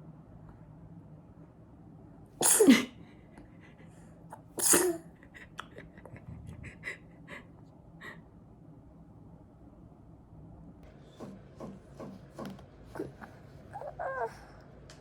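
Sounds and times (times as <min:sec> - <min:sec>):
person sneezing: 0:02.4 - 0:03.0, 0:04.5 - 0:05.1.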